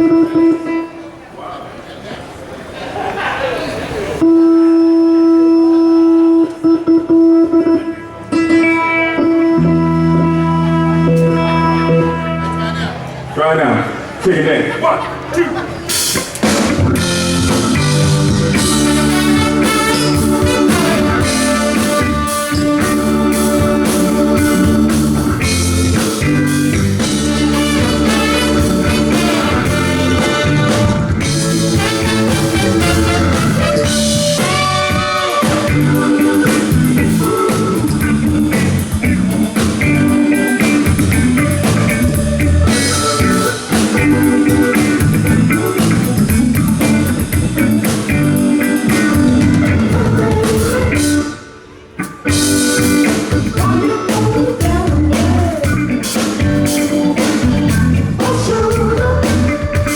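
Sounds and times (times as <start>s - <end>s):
electric guitar: 4.2s - 13.4s, 15.3s - 59.9s
bass guitar: 4.3s - 13.4s, 15.1s - 59.9s
drum kit: 15.9s - 51.4s, 52.0s - 59.9s.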